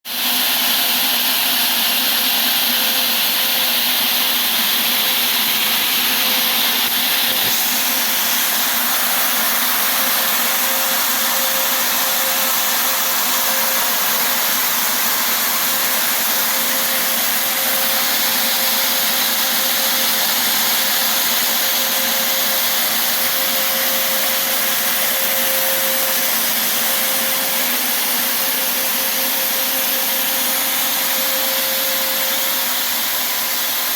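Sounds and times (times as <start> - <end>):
fogging machine blower hissing: 0.1 - 33.9.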